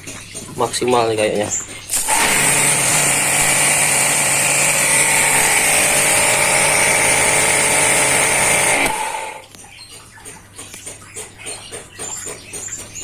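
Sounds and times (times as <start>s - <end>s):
pressure washer motor whine: 1.9s - 9.4s
water hissing: 5.3s - 9.4s.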